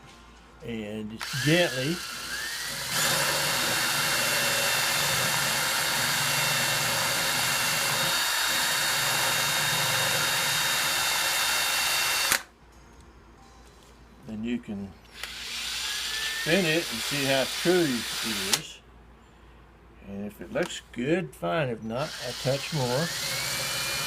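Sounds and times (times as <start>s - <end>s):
power drill running: 1.2s - 12.5s, 15.1s - 18.6s, 22.0s - 24.0s.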